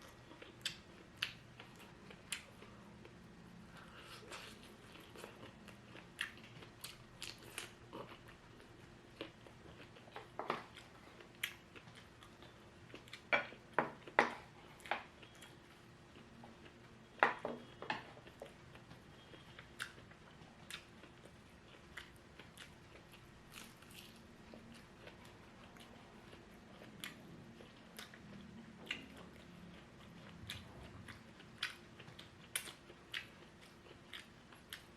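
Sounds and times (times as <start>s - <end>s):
wet chewing: 17.7s - 34.9s.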